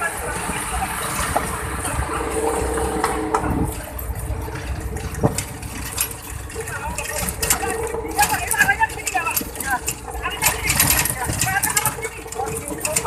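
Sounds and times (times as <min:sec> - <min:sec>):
vehicle engine low rumble: 0:00.0 - 0:13.0
knocks and rattles: 0:02.8 - 0:13.0.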